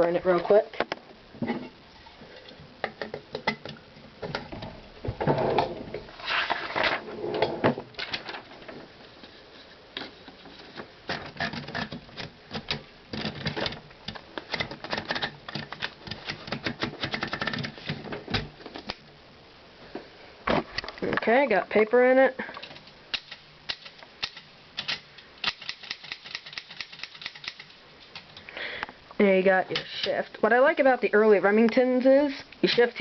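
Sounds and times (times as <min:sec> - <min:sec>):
paper rustling: 0:06.2 - 0:07.0
typewriter carriage clicking: 0:23.2 - 0:27.7.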